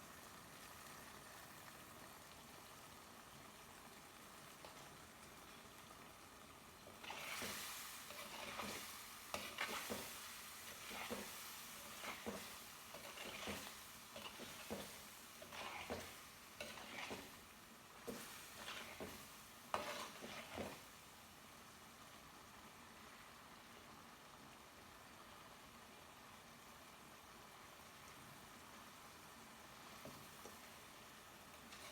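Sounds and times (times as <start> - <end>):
food sizzling: 0.0 - 31.9
spoon scraping a pan: 6.8 - 20.9, 31.5 - 31.9.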